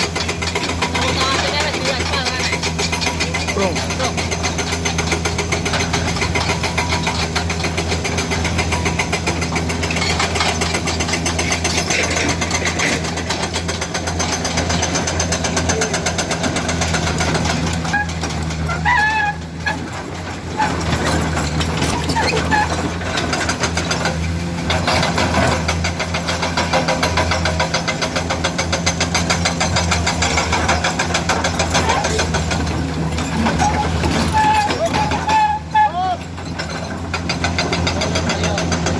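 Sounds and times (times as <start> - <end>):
excavator diesel engine running: 0.0 - 38.9
short squeaks: 17.8 - 19.9, 33.2 - 37.0.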